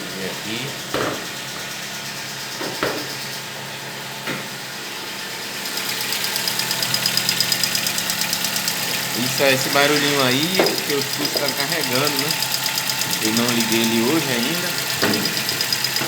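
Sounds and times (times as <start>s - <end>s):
car engine idling: 0.0s - 16.0s
valve lifters ticking: 5.6s - 16.0s.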